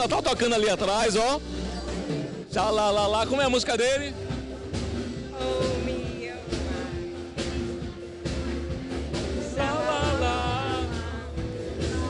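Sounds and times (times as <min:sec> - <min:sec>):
live band music with bass: 0:04.0 - 0:12.0
person singing: 0:09.5 - 0:12.0.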